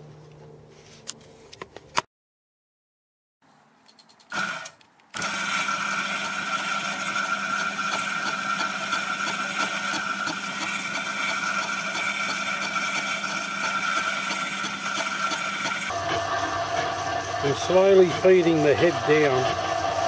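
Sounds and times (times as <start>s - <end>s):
milling machine running: 5.2s - 20.0s.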